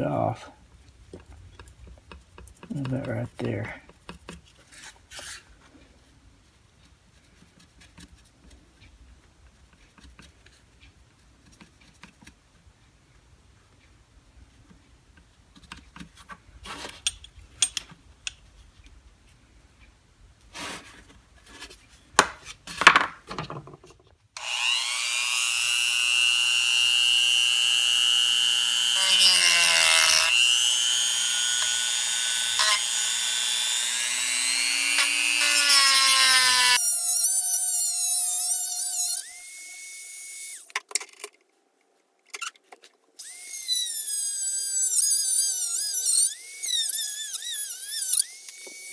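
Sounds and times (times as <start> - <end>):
power tool motor whining: 24.4 - 40.7, 43.2 - 48.9.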